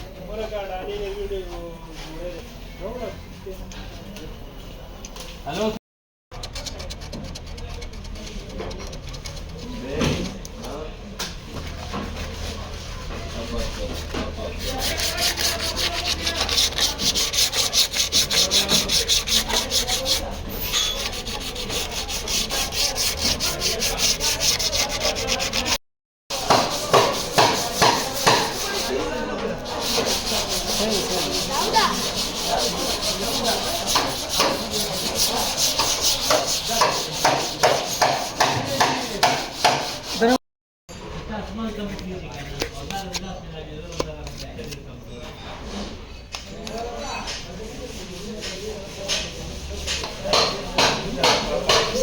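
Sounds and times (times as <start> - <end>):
sandpaper scraping: 11.8 - 40.4.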